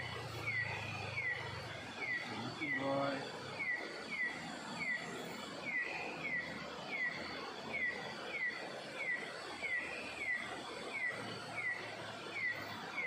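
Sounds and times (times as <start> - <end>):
outdoor background noise: 0.0 - 13.0.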